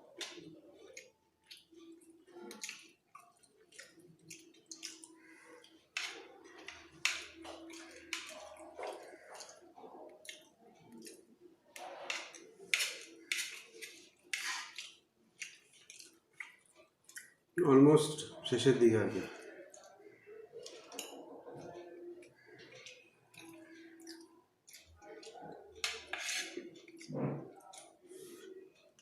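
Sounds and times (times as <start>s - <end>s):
chewing with wet mouth clicks: 0.2s - 17.4s, 22.2s - 26.1s.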